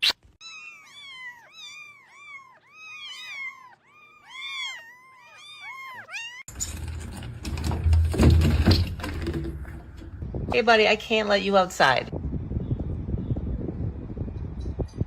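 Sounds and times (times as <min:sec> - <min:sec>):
cat meowing: 0:00.4 - 0:06.5.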